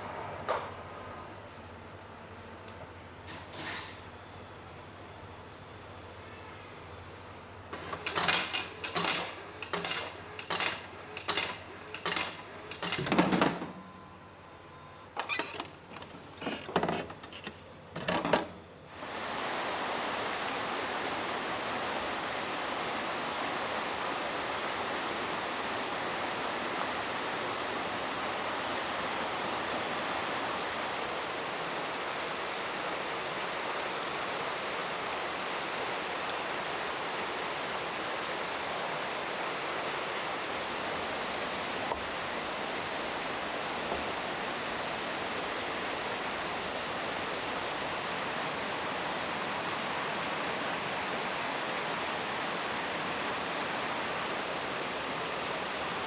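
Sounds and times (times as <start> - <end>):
waterfall rushing: 19.0 - 56.0.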